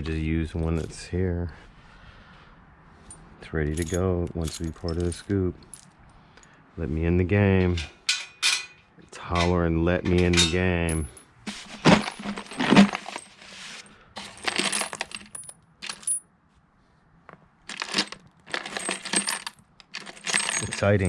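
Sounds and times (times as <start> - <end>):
metal nuts and bolts clinking: 3.7 - 6.0, 7.6 - 16.2, 17.7 - 21.0.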